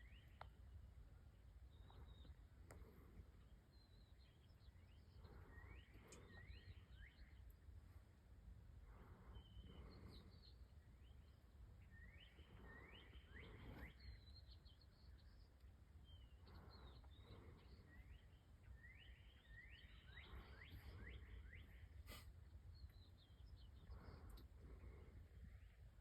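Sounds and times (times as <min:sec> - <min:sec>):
songbird chirps: 0:00.0 - 0:26.0.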